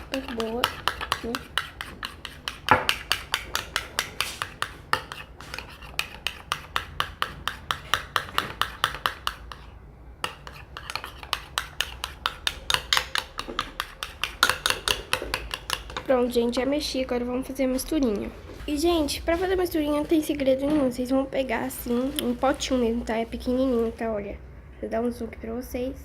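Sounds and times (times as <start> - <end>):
utensil scraping container sides: 0.0 - 14.8
utensil stirring slime: 0.0 - 17.1, 21.4 - 24.2.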